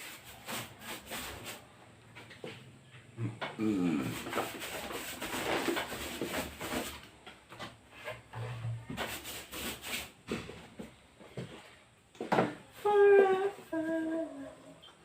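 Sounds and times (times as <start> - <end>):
rubbing and scraping: 0.0 - 1.7, 3.9 - 10.6.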